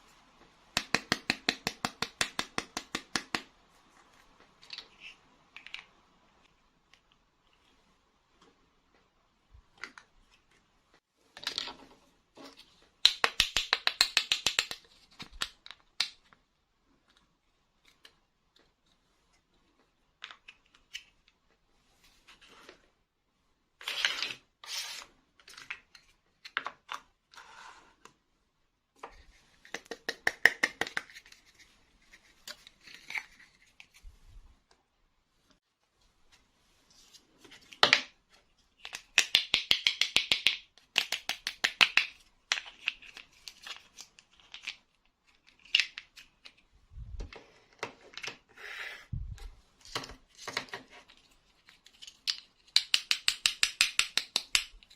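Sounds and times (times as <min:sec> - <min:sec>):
plastic toy pieces clicking: 0:52.0 - 0:54.9.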